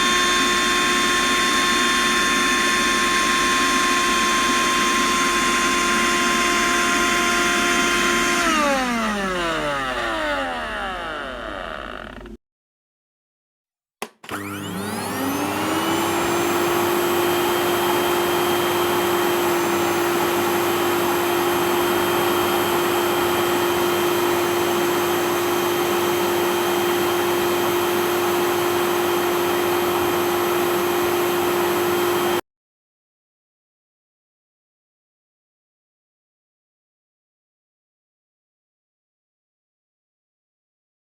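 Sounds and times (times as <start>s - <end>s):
vacuum cleaner whine: 0.0s - 12.4s, 14.0s - 32.4s.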